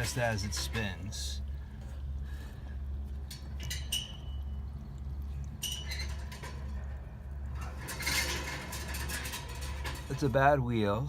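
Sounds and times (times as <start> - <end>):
low hum: 0.0 - 11.0
metallic clicks and squeaks: 3.1 - 10.5.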